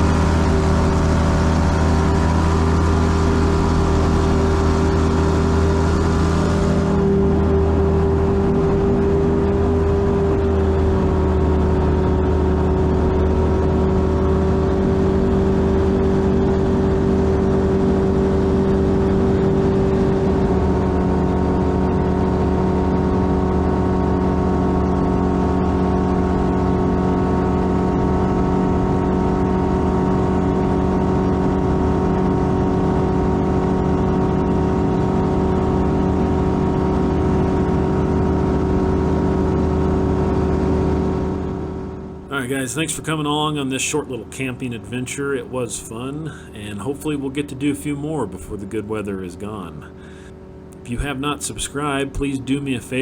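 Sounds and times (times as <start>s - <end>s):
light aircraft engine and propeller: 0.0s - 53.0s.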